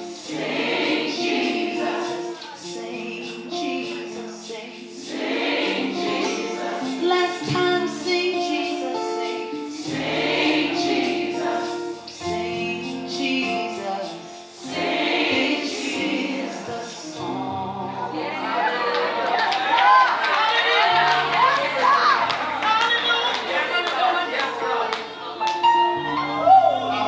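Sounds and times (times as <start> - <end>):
instrumental accompaniment: 0.0 - 18.1, 24.5 - 27.0
gospel choir singing: 0.0 - 27.0.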